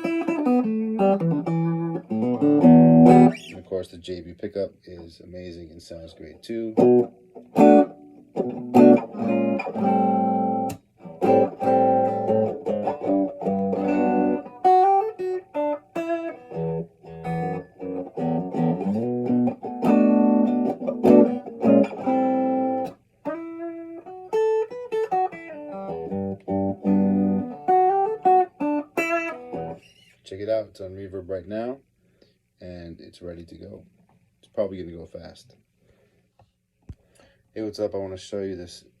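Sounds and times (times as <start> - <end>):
electric guitar chords and riffs: 0.0 - 3.6, 6.8 - 29.9.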